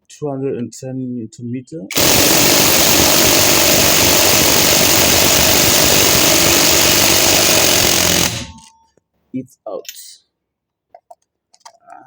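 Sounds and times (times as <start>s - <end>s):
impact wrench hammering: 1.9s - 8.7s.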